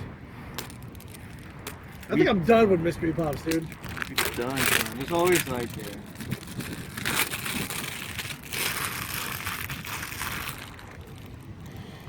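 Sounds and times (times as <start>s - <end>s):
packaging crumpling: 3.7s - 11.5s.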